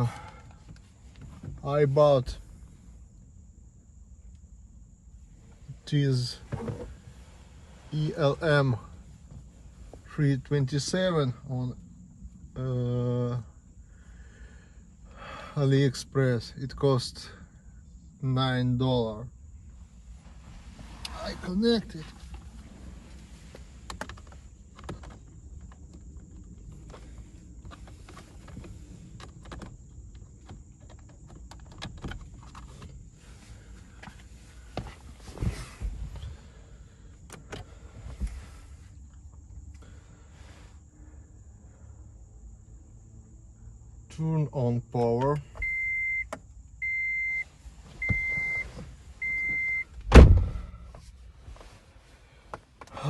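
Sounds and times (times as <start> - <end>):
car door shutting: 6.4 - 7.1, 47.9 - 51.0
hands clicking and tapping in car: 23.8 - 32.9
car warning chime beeps: 45.6 - 50.0.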